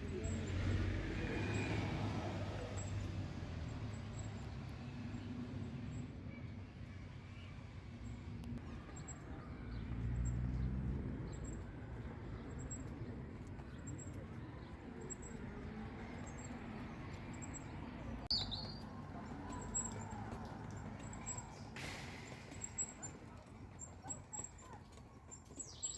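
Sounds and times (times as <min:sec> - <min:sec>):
low engine hum: 0:00.0 - 0:25.9
small birds chirping: 0:08.6 - 0:25.9.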